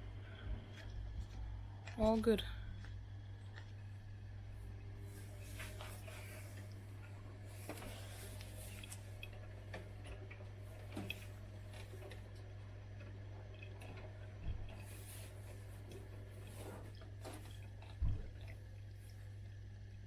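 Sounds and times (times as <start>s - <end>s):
washing machine low hum: 0.0s - 20.0s.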